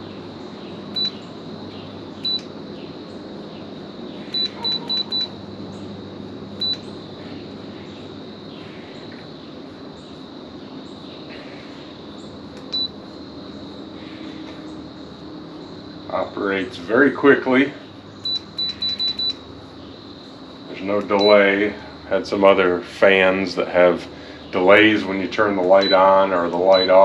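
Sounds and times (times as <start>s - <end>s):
steady background hum: 0.0s - 27.0s.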